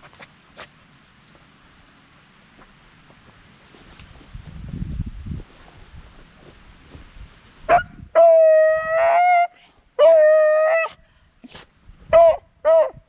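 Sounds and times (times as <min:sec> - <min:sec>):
dog howling: 0:08.2 - 0:10.9.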